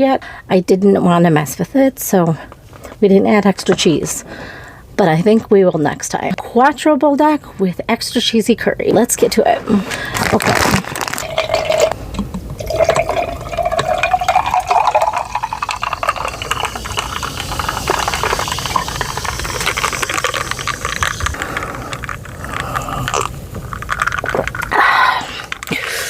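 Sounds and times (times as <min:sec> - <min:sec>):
fizzy drink pouring into glass: 0:11.0 - 0:12.0, 0:12.6 - 0:24.8
fine fizzing crackle: 0:12.6 - 0:22.4.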